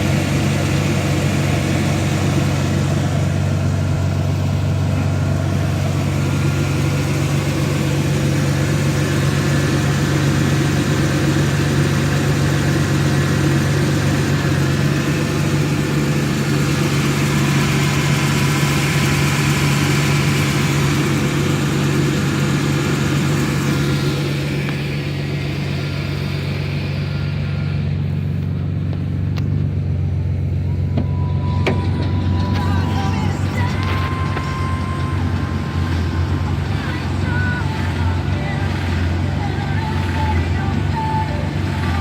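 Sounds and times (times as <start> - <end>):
car engine idling: 0.0 - 42.0.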